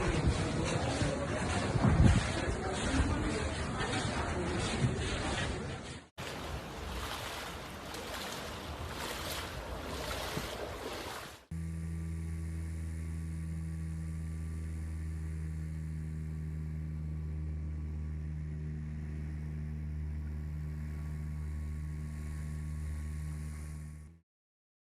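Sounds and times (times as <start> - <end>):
motor humming: 10.9 - 24.2.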